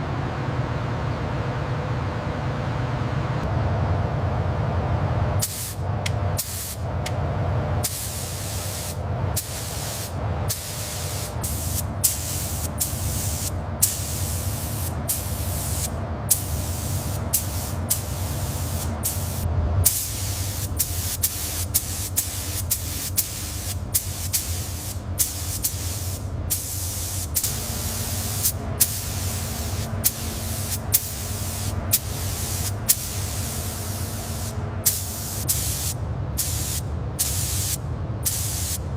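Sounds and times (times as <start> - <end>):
steady low hum: 0.0 - 38.9
compressed-air tool hissing: 6.4 - 6.8, 7.8 - 38.8.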